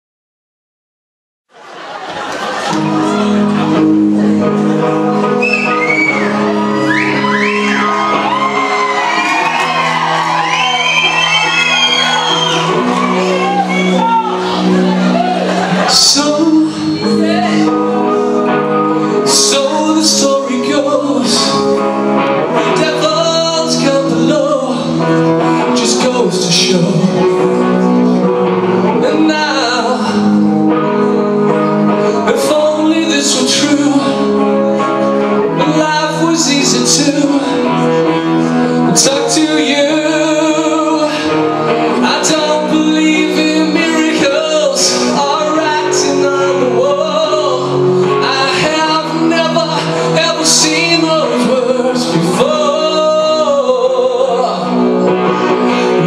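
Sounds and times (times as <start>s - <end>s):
rock band playing: 1.8s - 56.0s
man singing: 11.8s - 56.0s.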